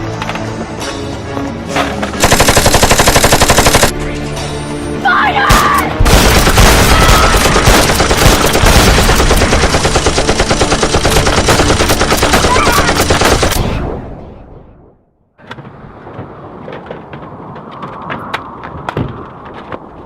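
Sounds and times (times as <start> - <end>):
rapid automatic gunfire: 2.2 - 3.9, 6.1 - 13.6.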